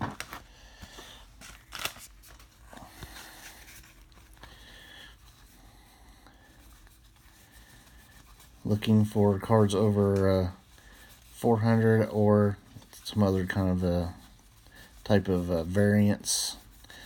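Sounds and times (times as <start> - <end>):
cards scraping and rustling: 0.0 - 5.5.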